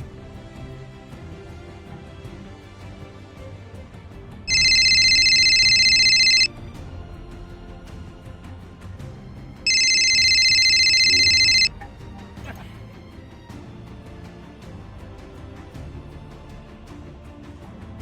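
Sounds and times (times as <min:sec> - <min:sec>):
background music: 0:00.0 - 0:18.0
warbling electronic ringing tone: 0:04.5 - 0:06.5, 0:09.7 - 0:11.7.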